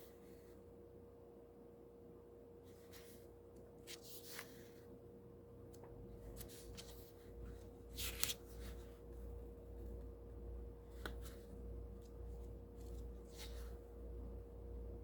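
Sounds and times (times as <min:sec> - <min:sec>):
faint steady hum: 0:00.0 - 0:15.0
pages turning: 0:03.8 - 0:04.8, 0:06.2 - 0:09.0, 0:10.9 - 0:13.8.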